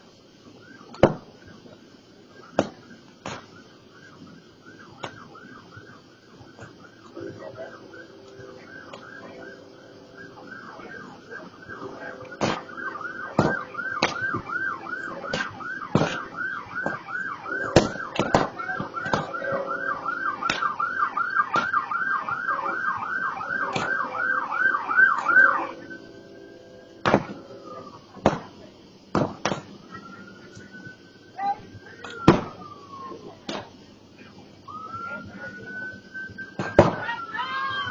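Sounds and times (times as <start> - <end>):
emergency siren yelp: 2.3 - 28.2, 29.8 - 33.4, 34.6 - 37.9
siren wail: 2.3 - 28.2, 29.8 - 33.4, 34.7 - 37.9
burning brush pile popping: 2.4 - 7.4, 10.2 - 25.6, 27.0 - 30.7, 31.8 - 37.9.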